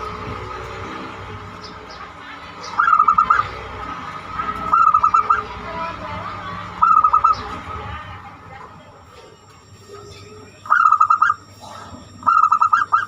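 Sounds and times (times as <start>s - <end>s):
dove cooing: 2.6s - 6.0s, 6.6s - 7.7s, 10.6s - 13.0s.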